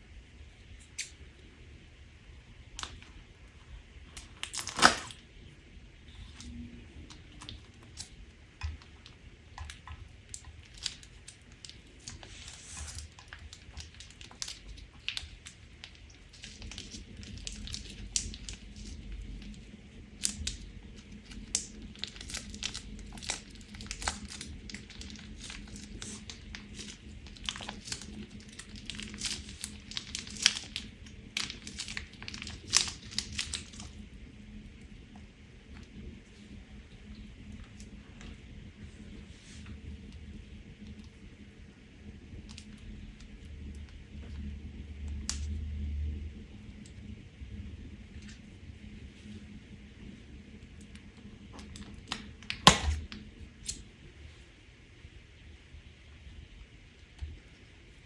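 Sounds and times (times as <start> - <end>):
slime crackling and popping: 4.2 - 5.2, 7.1 - 34.0, 51.5 - 53.8.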